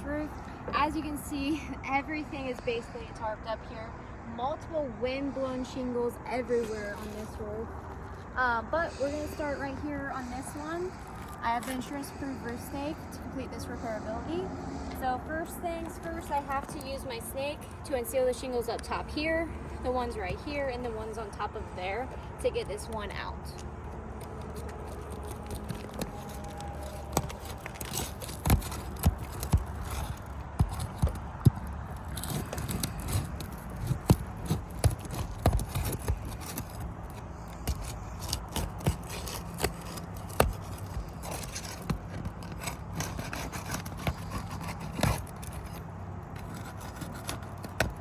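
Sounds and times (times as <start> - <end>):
shingles clicking and popping: 23.6 - 48.0
metal tool scraping shingles: 24.3 - 48.0.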